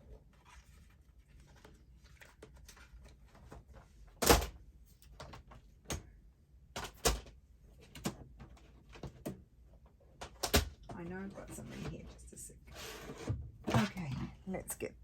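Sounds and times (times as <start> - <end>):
papers being shuffled: 0.2 - 4.2.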